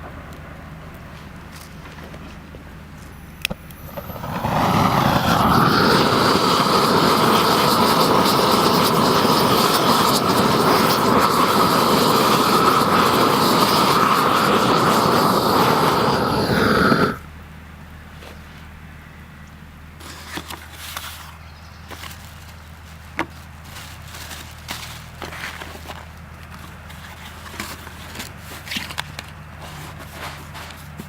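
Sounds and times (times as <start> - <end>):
gas torch burning: 3.3 - 17.3
torch click: 3.4 - 17.2.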